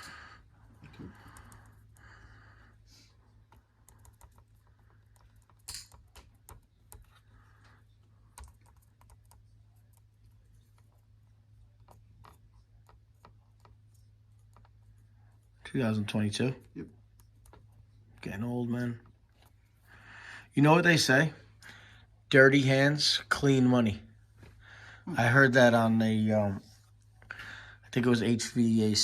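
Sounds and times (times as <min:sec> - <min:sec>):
low steady hum: 0:00.0 - 0:29.0.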